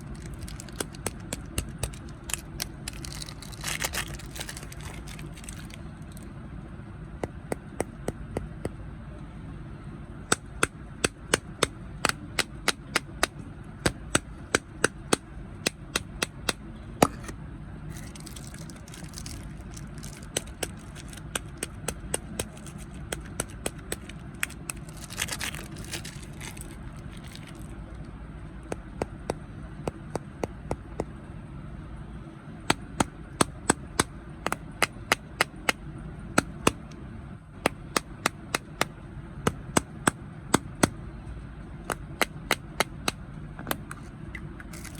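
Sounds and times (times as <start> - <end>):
crunchy snacks crunching: 0.0 - 6.2, 17.9 - 27.8
steady low hum: 0.0 - 44.9.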